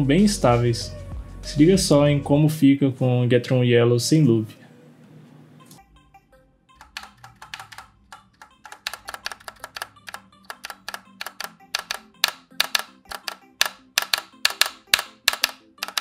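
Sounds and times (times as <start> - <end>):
quiet background music: 0.0 - 16.0
mechanical keyboard typing: 6.8 - 16.0.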